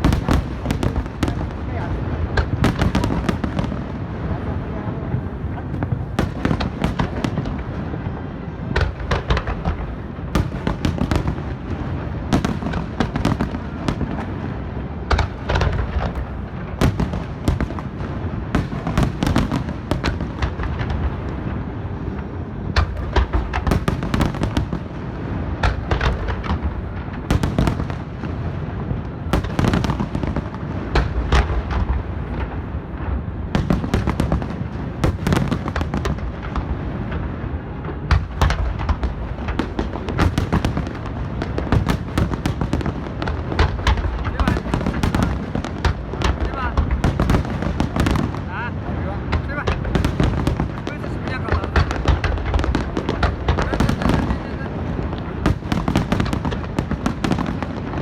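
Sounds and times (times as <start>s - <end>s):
fireworks rumble and crackle: 0.0s - 58.0s
firework shells bursting: 37.9s - 58.0s.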